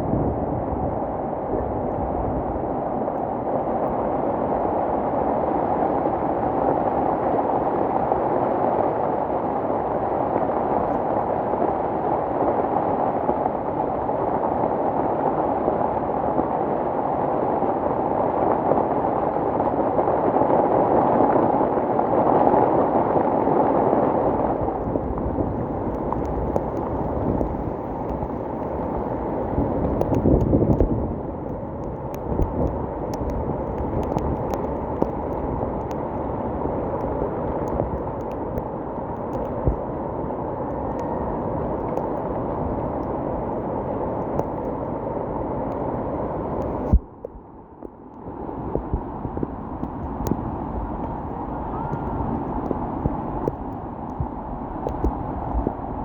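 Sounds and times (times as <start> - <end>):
river floodwater rushing: 48.3 - 56.0.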